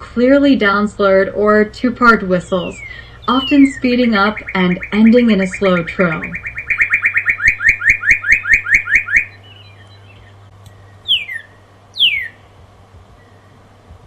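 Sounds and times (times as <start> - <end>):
bird singing whistled notes: 2.4 - 12.5, 13.2 - 13.7.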